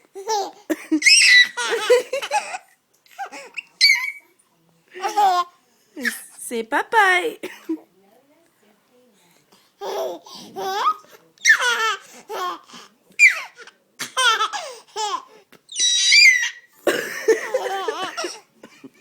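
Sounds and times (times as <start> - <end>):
baby laughing: 0.2 - 4.2, 9.8 - 16.6, 17.2 - 18.5
baby squealing: 1.0 - 1.8, 3.6 - 4.2, 10.7 - 12.0, 13.2 - 13.6, 14.5 - 16.7.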